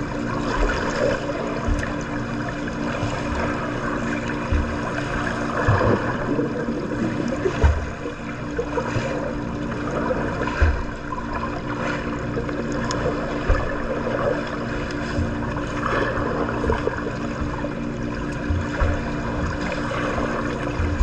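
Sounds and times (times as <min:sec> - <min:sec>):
steady low hum: 0:00.0 - 0:21.0
water splashing in a pool: 0:00.0 - 0:21.0
dull low thumps: 0:18.4 - 0:19.6, 0:20.7 - 0:21.0.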